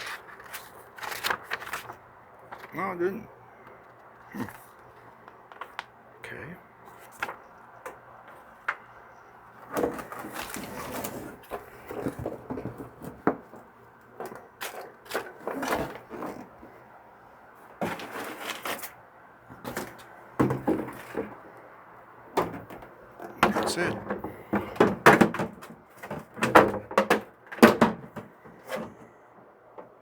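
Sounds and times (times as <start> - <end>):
plastic parts clicking and knocking: 22.4 - 28.9.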